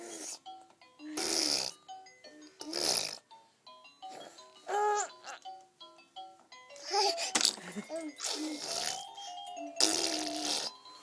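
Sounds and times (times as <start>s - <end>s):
baby blowing raspberries: 0.0s - 0.4s, 1.1s - 1.8s, 2.6s - 3.2s, 6.8s - 10.8s
tinkly background melody: 0.0s - 11.0s
baby high vocal sound: 4.7s - 5.3s.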